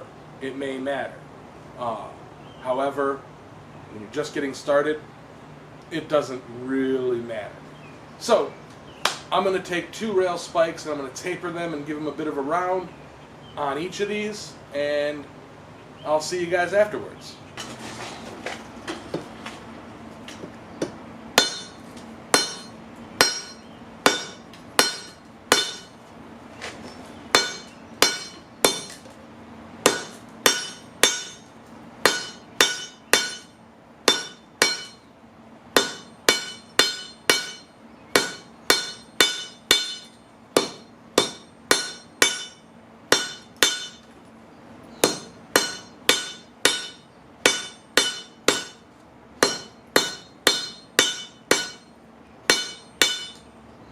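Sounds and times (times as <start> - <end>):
hammer striking anvil: 21.4 - 21.8, 22.4 - 26.0, 27.4 - 29.0, 29.9 - 33.5, 34.1 - 35.0, 35.8 - 44.1, 45.0 - 48.8, 49.4 - 51.9, 52.5 - 53.4.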